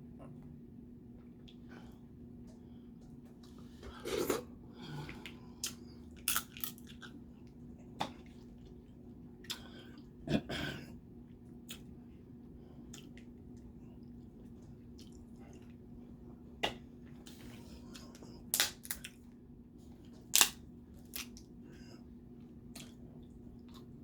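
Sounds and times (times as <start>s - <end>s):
faint steady hum: 0.0s - 24.0s
chewing: 5.0s - 10.1s, 12.9s - 15.8s, 22.7s - 23.9s
shells cracking and crunching: 6.2s - 7.0s, 18.5s - 19.2s, 20.3s - 21.5s.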